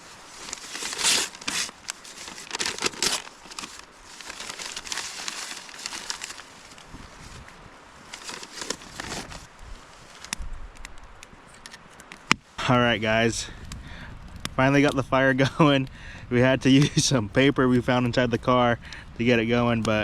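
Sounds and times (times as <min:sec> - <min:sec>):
paper crumpling and tearing: 0:00.0 - 0:10.4.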